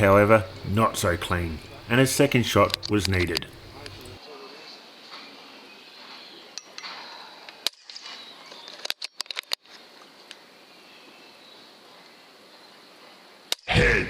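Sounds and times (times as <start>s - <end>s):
faint high hiss: 0.0s - 4.2s.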